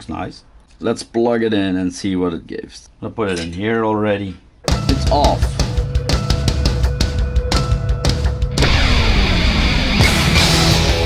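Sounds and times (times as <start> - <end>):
hard rock music with drums: 4.7 - 11.0.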